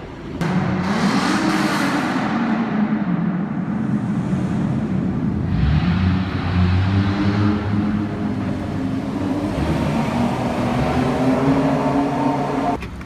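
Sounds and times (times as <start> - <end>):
car engine revving: 0.4 - 12.8.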